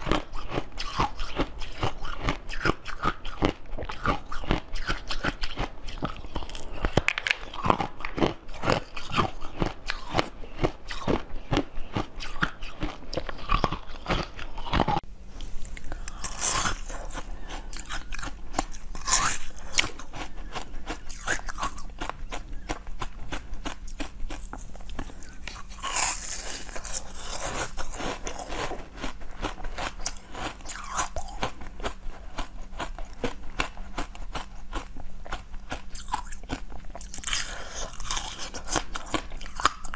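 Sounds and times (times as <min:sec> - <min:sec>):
crisp bites and crunches: 0:00.0 - 0:15.0
chewing: 0:00.0 - 0:39.9.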